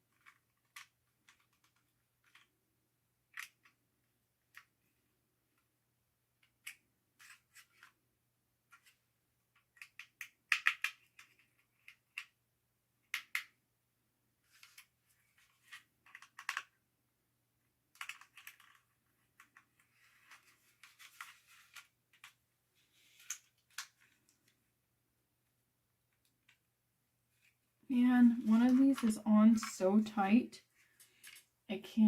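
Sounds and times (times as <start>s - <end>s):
plastic toy being handled: 0.0s - 2.6s, 3.2s - 5.8s, 6.4s - 8.0s, 8.6s - 12.4s, 13.0s - 13.6s, 14.4s - 16.8s, 17.9s - 24.7s, 26.1s - 26.7s, 27.3s - 31.6s.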